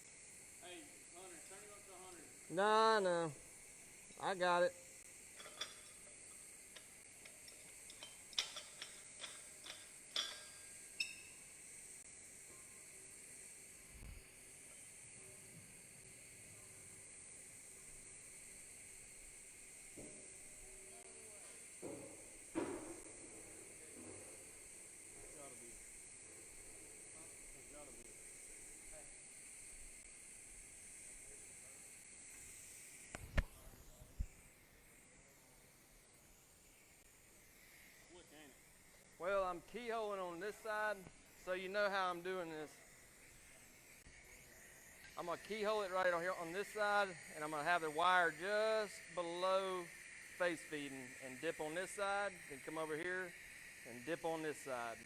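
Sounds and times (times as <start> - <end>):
welding arc hiss: 0.0 - 55.0
sharp ringing clicks: 5.3 - 11.4.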